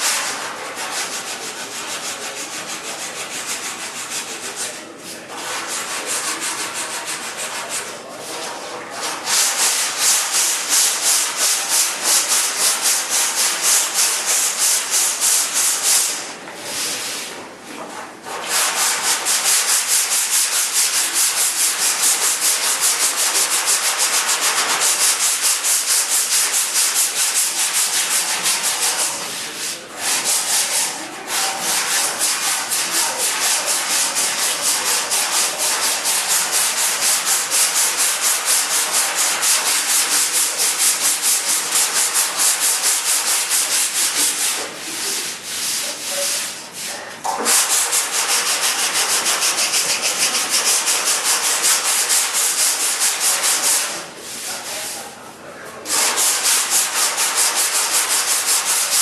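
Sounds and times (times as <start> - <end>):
sandpaper rubbing by hand: 0.0 - 17.4, 18.3 - 55.2, 55.8 - 59.0.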